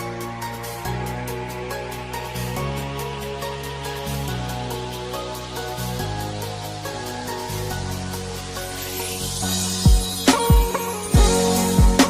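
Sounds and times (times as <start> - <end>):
electronic music with beat and bass: 0.0 - 12.0.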